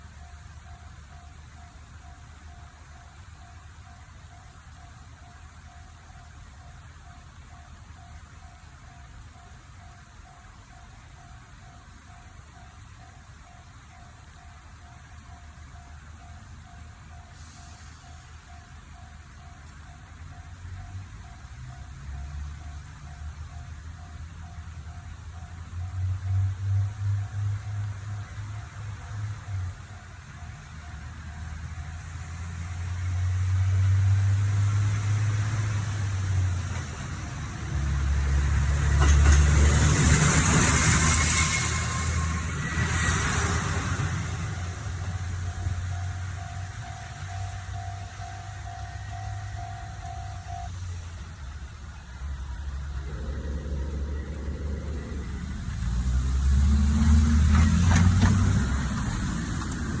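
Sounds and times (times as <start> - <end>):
diesel railcar engine running: 0.0 - 60.0
train running noise hiss: 0.0 - 60.0
vehicle engine running: 43.9 - 60.0.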